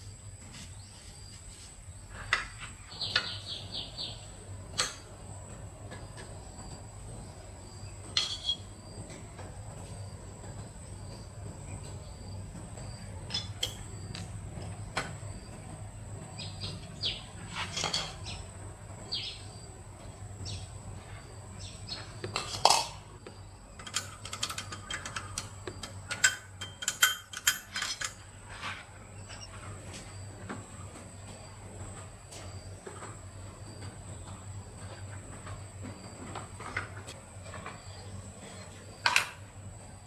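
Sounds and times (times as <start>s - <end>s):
tools and metal parts clinking: 8.1s - 8.7s, 13.3s - 14.2s, 17.6s - 18.4s, 22.2s - 23.1s, 23.7s - 29.6s.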